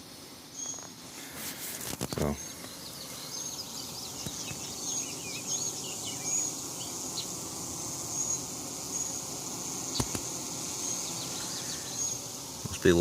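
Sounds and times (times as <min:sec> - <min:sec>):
bees buzzing: 0:00.0 - 0:13.0
sharp click: 0:10.0 - 0:10.3.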